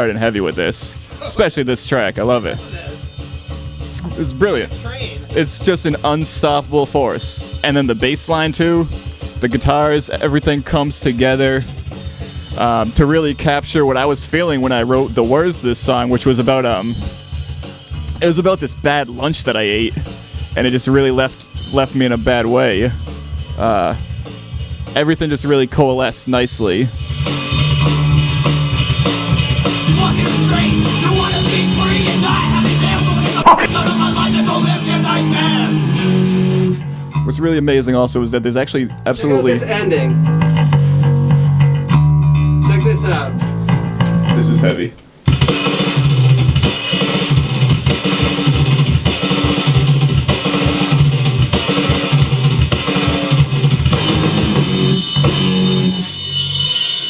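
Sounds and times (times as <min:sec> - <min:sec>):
bass guitar: 0:00.0 - 0:06.8, 0:27.5 - 0:38.3, 0:39.4 - 0:44.8, 0:45.9 - 0:56.7
punk rock music: 0:00.0 - 0:10.3, 0:28.0 - 0:36.8
drums with cymbals: 0:00.9 - 0:19.1, 0:19.7 - 0:25.0, 0:26.6 - 0:33.8, 0:45.3 - 0:57.0.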